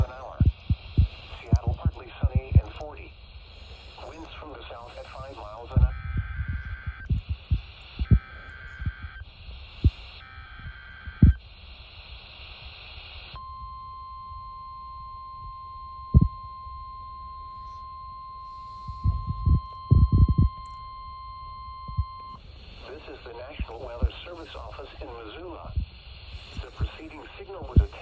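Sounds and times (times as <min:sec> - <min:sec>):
steady radio alert tone: 0:00.0 - 0:09.2, 0:17.6 - 0:28.0
raspy two-tone data warbles: 0:04.0 - 0:11.4.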